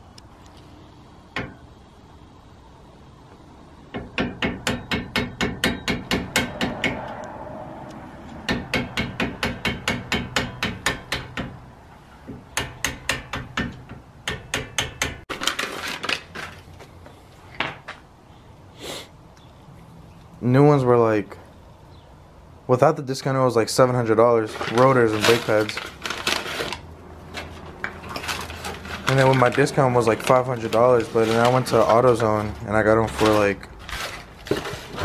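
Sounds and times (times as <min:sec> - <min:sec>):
hammer blows: 0:03.9 - 0:11.6.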